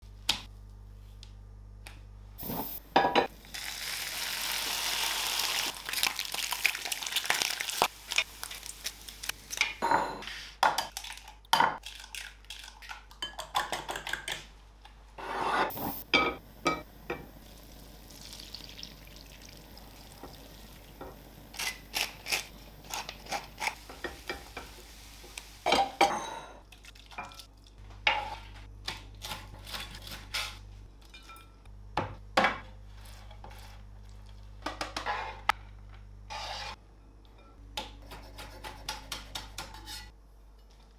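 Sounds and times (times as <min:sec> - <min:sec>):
food sizzling in a pan: 0:02.4 - 0:10.3, 0:15.2 - 0:26.6
utensils clinking against pans: 0:25.6 - 0:26.6, 0:39.3 - 0:40.1.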